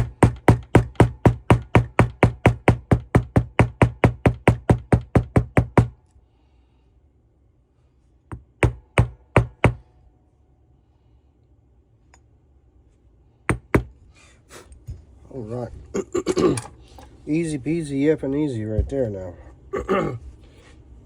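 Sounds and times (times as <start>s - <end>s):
rapid hammer taps: 0.0s - 6.0s, 8.3s - 9.8s.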